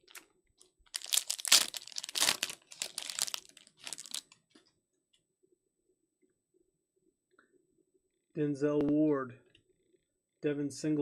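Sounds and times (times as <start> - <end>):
plastic wrapper tearing and crinkling: 0.9 - 4.4.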